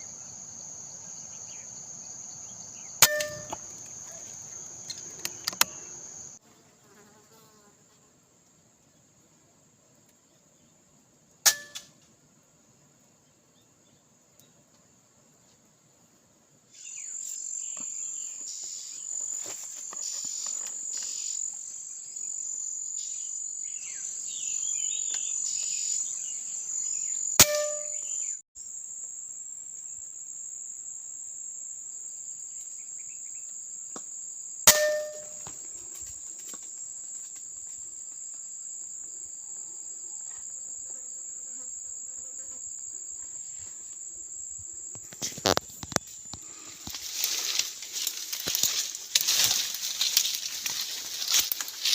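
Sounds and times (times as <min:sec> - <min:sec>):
insects buzzing: 0:00.0 - 0:08.2, 0:16.8 - 0:51.9
airgun shots with metallic ring: 0:03.0 - 0:03.6, 0:11.4 - 0:11.9, 0:27.4 - 0:28.0, 0:34.7 - 0:35.4.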